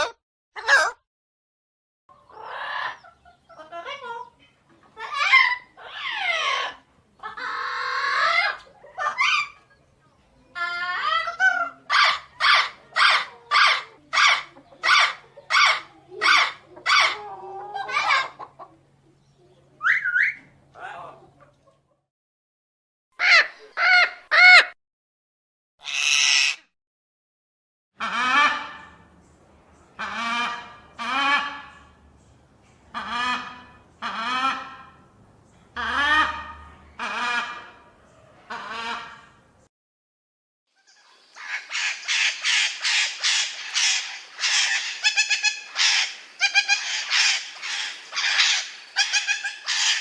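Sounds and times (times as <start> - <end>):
parrot harsh calls: 0.0 - 1.0, 5.0 - 6.8, 10.6 - 17.2, 23.2 - 24.8, 25.8 - 26.7, 41.4 - 50.0
parrot warbling call: 25.8 - 26.7, 41.4 - 50.0.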